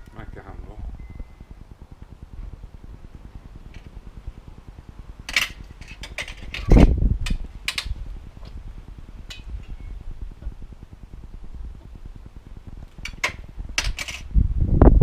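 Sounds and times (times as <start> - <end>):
wire clicking and clinking: 5.2 - 8.6, 12.8 - 14.3.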